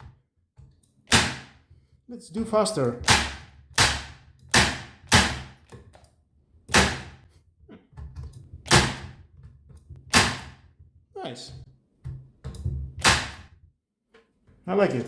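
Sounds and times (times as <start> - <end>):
electric nailer shots: 1.1 - 1.5, 3.0 - 5.5, 6.7 - 7.1, 8.7 - 9.1, 10.1 - 10.5.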